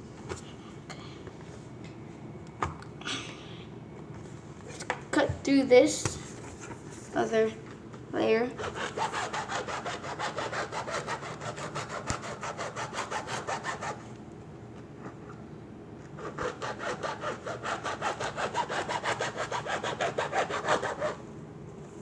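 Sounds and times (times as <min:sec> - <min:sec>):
blade sawing through leather: 0:08.6 - 0:14.0, 0:16.2 - 0:21.2.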